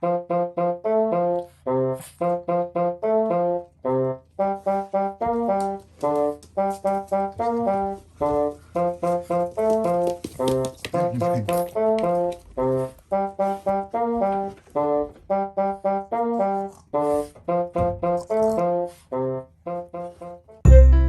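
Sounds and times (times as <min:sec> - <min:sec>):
upbeat brass-like music: 0:00.0 - 0:09.8, 0:18.6 - 0:21.0.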